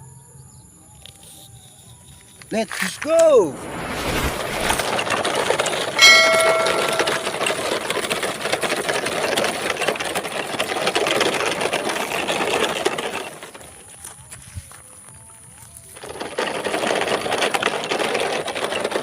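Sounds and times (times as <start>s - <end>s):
toy truck rattling: 4.7s - 14.2s, 15.6s - 19.0s.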